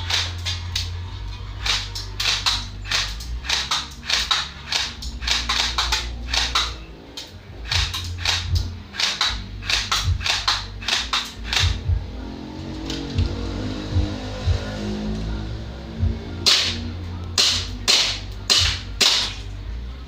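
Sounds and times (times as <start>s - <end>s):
airsoft gun shots: 1.6s - 6.8s, 7.6s - 11.9s, 16.4s - 19.4s.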